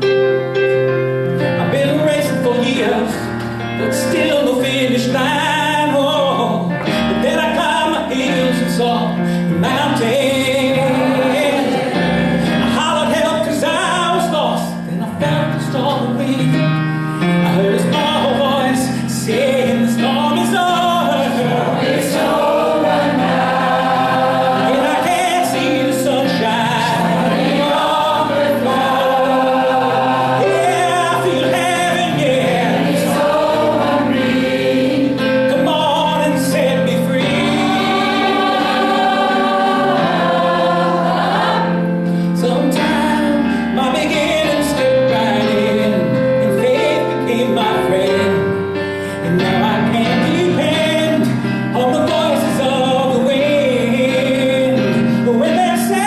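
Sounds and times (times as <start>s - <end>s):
gospel choir singing: 0.0s - 16.7s, 17.4s - 56.0s
keyboard accompaniment: 0.0s - 56.0s.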